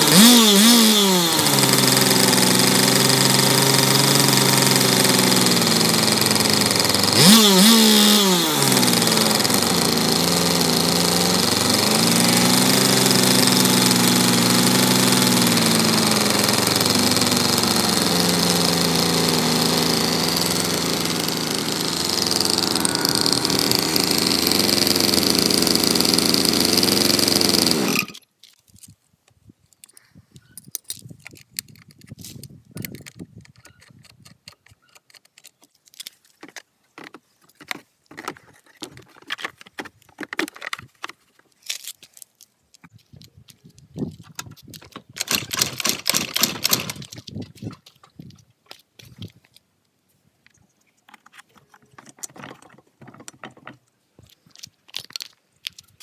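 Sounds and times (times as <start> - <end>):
engine running and revving: 0.0 - 28.2.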